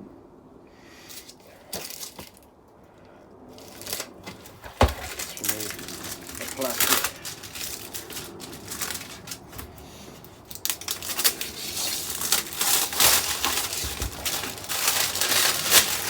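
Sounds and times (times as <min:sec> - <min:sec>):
plastic wrapping torn and crinkled: 0:03.6 - 0:09.8, 0:10.4 - 0:16.0.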